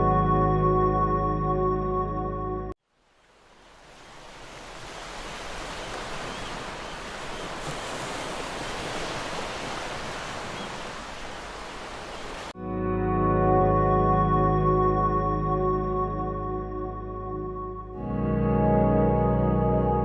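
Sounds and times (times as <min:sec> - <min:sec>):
water rushing: 0:03.0 - 0:12.6.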